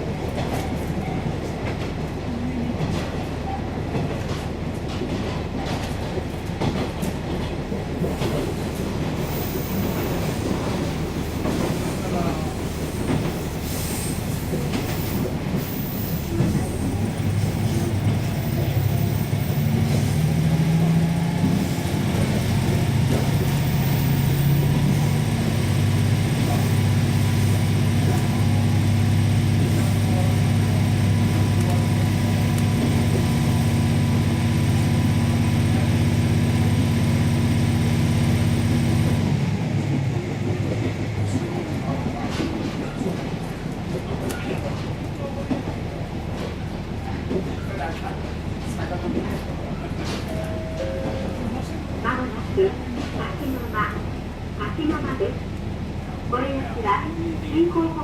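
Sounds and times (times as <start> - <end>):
railcar engine drone: 0.0 - 58.0.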